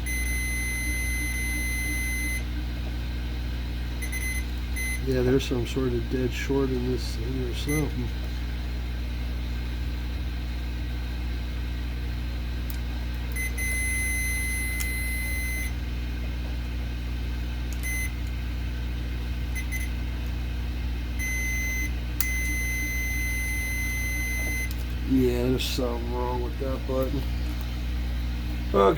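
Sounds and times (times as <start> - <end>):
continuity tester beeping: 0.0 - 2.5, 4.0 - 8.1, 13.3 - 15.8, 17.7 - 18.3, 19.5 - 20.0, 21.2 - 25.5
steady low hum: 0.0 - 28.9.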